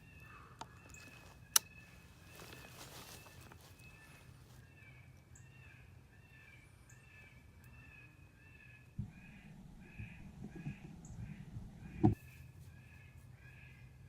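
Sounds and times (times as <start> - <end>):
low thump: 9.0 - 12.2.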